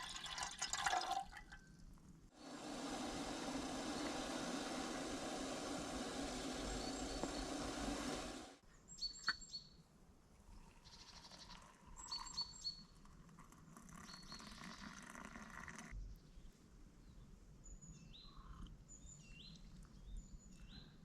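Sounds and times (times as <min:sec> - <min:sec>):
steady hiss: 0:02.3 - 0:08.6
animal chirping in forest: 0:10.5 - 0:13.0.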